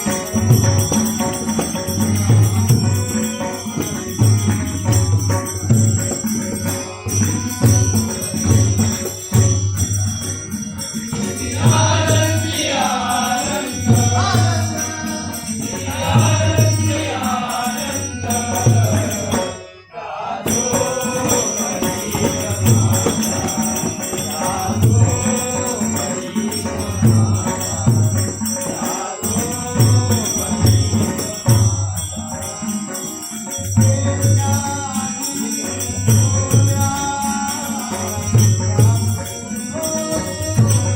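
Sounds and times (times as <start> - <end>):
drum strokes: 0.0 - 19.5
jingling metal percussion: 0.0 - 40.9.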